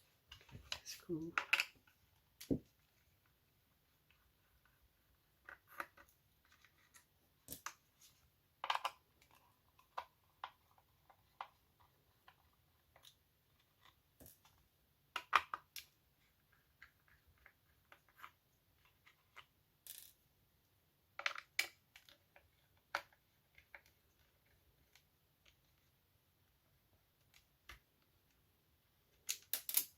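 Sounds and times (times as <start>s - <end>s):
plastic parts clacking: 8.6s - 20.2s, 29.2s - 29.9s.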